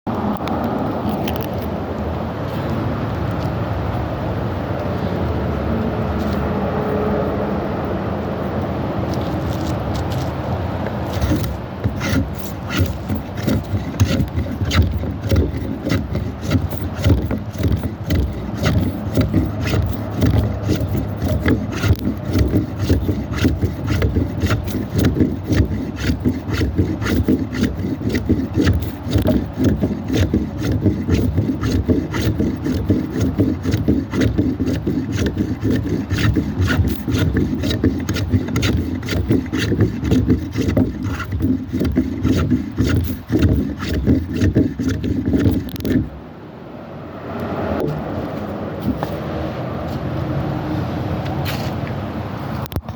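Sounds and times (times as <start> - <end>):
block plane shaving wood: 11.0 - 46.2.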